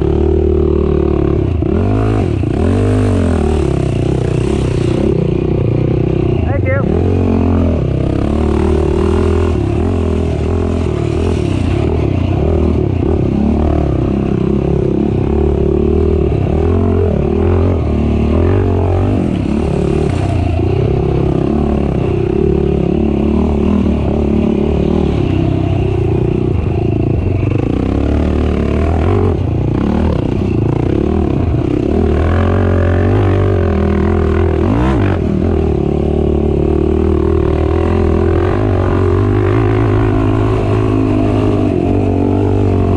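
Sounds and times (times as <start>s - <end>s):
racing atv engine revving: 0.0s - 42.9s.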